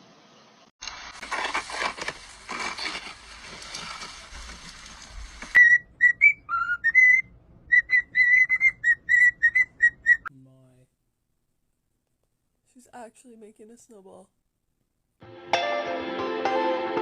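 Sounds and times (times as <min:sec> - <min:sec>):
rustling: 0:00.8 - 0:05.6.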